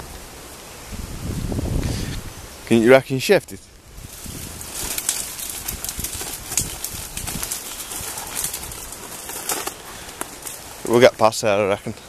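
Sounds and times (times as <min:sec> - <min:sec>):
footsteps through vegetation: 0:03.4 - 0:11.8
branch crackles and knocks: 0:03.6 - 0:11.4.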